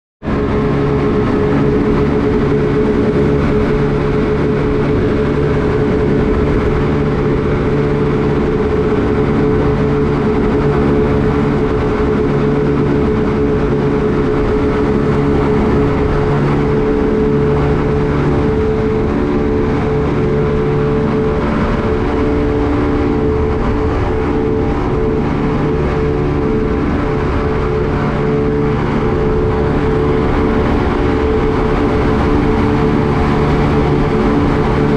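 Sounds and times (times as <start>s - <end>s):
motorboat engine drone: 0.2s - 34.9s
water rushing against hull: 0.2s - 34.9s.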